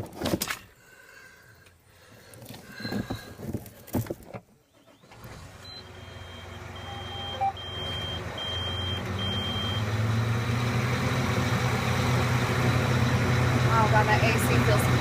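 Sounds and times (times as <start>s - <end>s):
tractor engine running: 2.7s - 15.0s
short electronic warning beeps: 5.6s - 9.9s.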